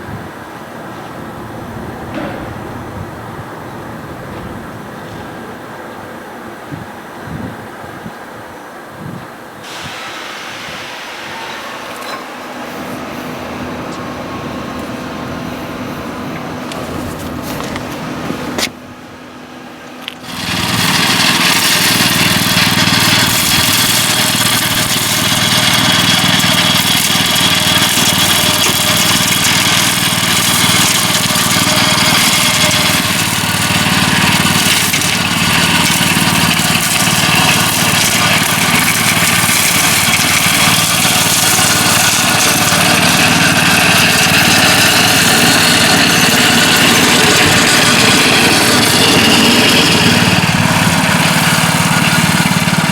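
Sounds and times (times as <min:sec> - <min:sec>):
brush cutter cutting grass: 0:11.9 - 0:18.8, 0:20.1 - 0:52.9.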